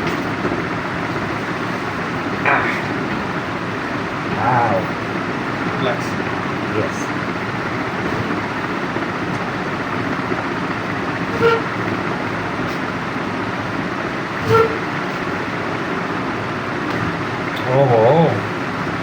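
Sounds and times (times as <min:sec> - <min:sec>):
steady background noise: 0:00.0 - 0:19.0
short vehicle horn toots: 0:11.3 - 0:11.7, 0:14.4 - 0:14.9.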